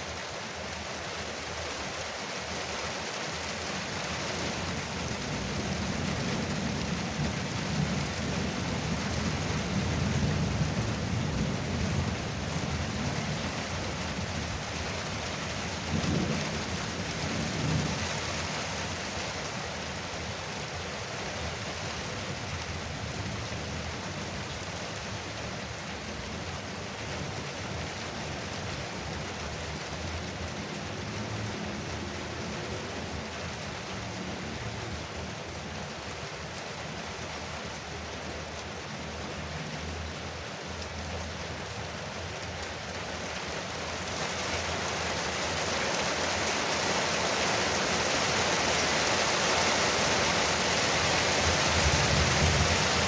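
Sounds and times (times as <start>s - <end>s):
heavy rain on a roof: 0.0s - 53.0s
thunder rumbling: 4.4s - 18.4s, 50.5s - 53.0s.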